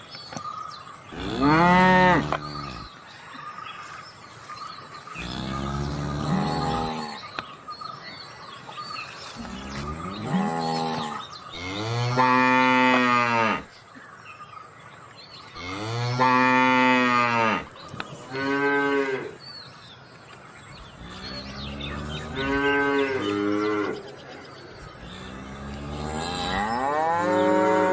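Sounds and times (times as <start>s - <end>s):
cattle mooing: 1.2s - 2.9s, 5.2s - 7.2s, 25.1s - 27.9s.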